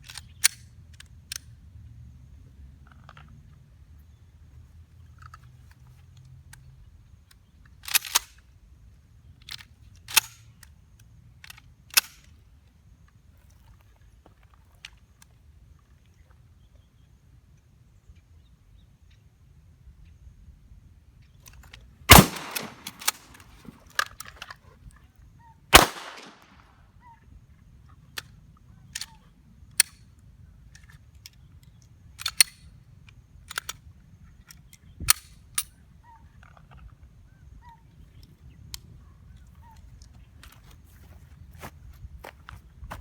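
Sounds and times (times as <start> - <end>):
gun clicks: 0.0 - 1.5, 7.3 - 8.5, 9.4 - 10.8, 11.4 - 12.3, 21.2 - 24.6, 25.7 - 26.7, 28.2 - 30.0, 30.7 - 33.9
loud shotgun shots: 22.1 - 23.4, 25.7 - 26.6.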